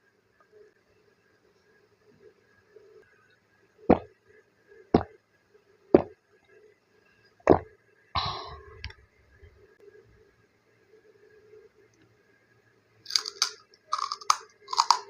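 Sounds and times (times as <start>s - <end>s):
click: 11.9s - 12.1s
packaging crackle: 13.1s - 15.0s.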